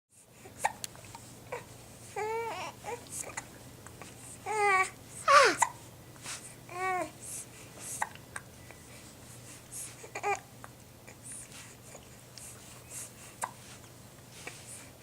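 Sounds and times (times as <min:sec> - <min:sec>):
child fussing and whining: 0:04.4 - 0:05.7
child hiccuping: 0:05.3 - 0:05.8.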